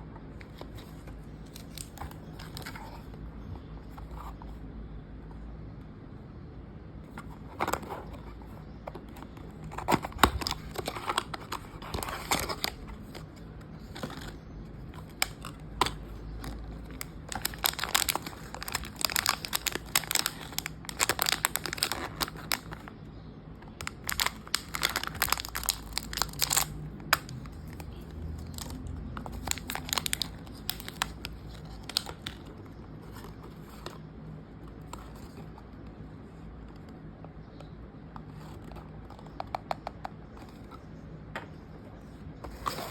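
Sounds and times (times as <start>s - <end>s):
packaging crinkling and tearing: 0.5s - 3.0s, 9.1s - 22.9s, 23.7s - 34.0s.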